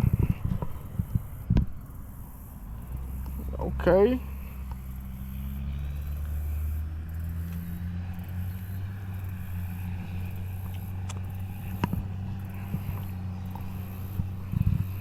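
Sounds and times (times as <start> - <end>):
low motor hum: 0.0 - 15.0
sharp clicks: 2.8 - 3.6, 10.6 - 14.8.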